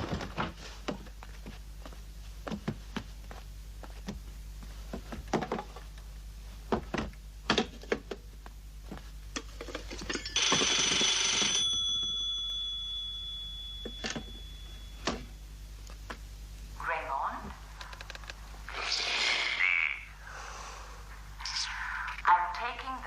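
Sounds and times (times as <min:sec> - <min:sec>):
telephone bell ringing: 0:10.1 - 0:15.4.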